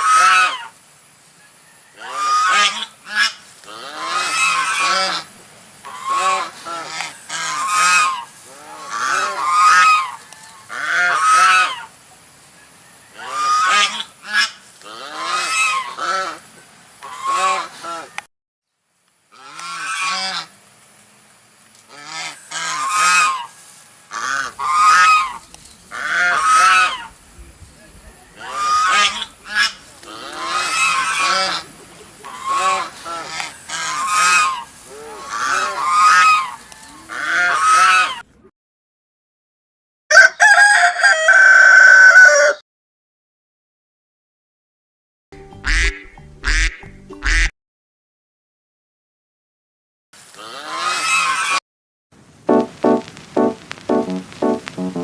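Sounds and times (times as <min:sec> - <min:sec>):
geese honking: 0:02.0 - 0:11.9, 0:17.0 - 0:18.1, 0:21.9 - 0:23.5, 0:24.1 - 0:27.2, 0:28.1 - 0:38.2.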